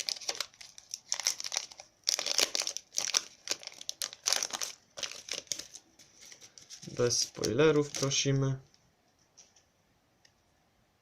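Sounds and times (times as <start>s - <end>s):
foil wrapper crinkling: 0.0s - 8.4s.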